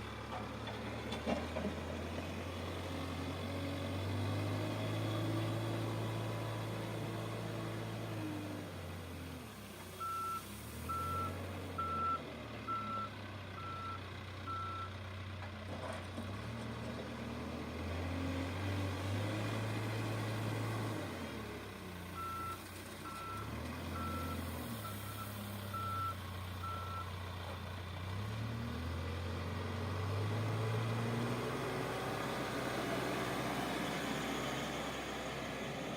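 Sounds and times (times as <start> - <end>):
reversing alarm beeping: 10.0 - 14.9, 24.0 - 27.1.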